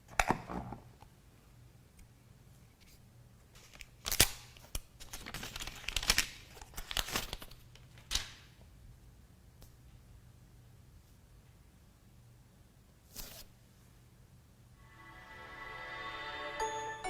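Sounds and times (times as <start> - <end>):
packaging rustling: 5.0 - 8.2.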